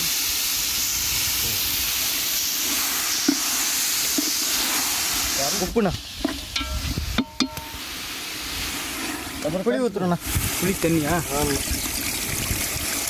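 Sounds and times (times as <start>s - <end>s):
food sizzling in oil: 0.0s - 13.0s.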